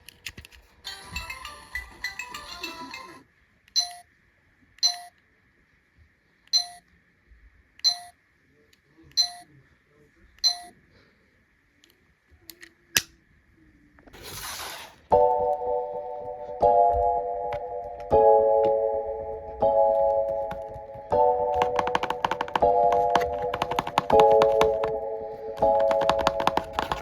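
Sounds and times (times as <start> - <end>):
short electronic beeps: 3.8 - 4.1, 4.8 - 5.1, 6.6 - 6.8, 7.8 - 8.2, 9.2 - 9.4, 10.4 - 10.7.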